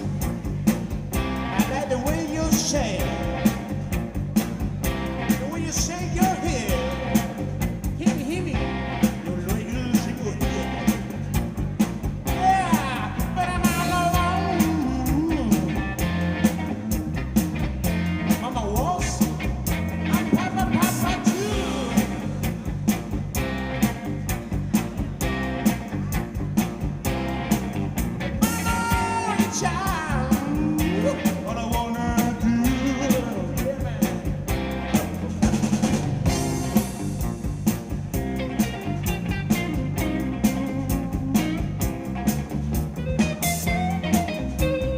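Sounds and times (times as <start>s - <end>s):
busy drum beat: 0.0s - 44.9s
electric guitar bending notes: 34.2s - 44.9s.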